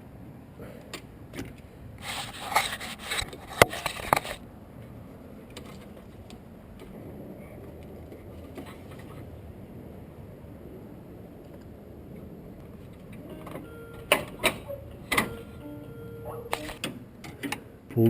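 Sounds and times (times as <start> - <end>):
metal part scraping and rattling: 2.0 - 4.4.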